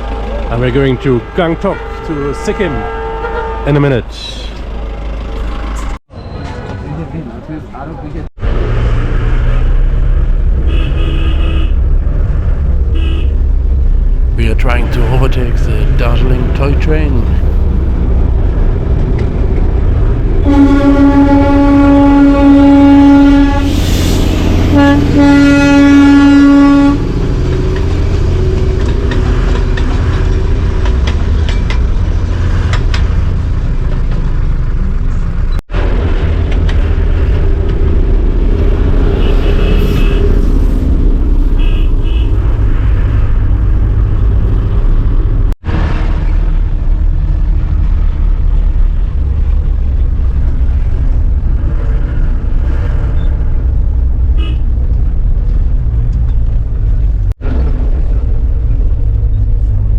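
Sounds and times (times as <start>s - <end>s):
train horn blasts: 0.0s - 3.9s, 20.4s - 23.9s, 24.5s - 27.2s
road noise: 0.0s - 59.9s.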